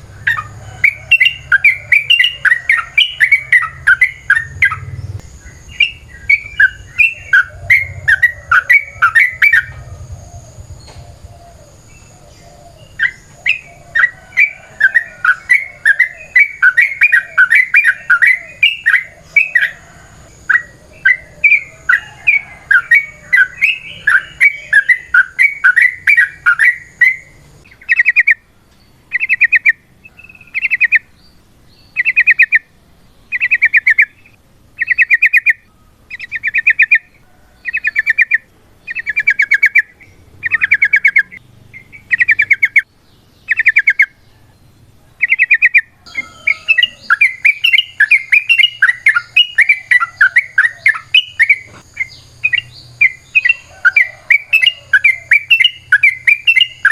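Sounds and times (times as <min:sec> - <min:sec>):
bird bubbling trills: 0:00.0 - 0:05.0, 0:05.7 - 0:11.3, 0:45.2 - 0:56.9
bird chattering: 0:00.0 - 0:44.2, 0:45.1 - 0:56.9.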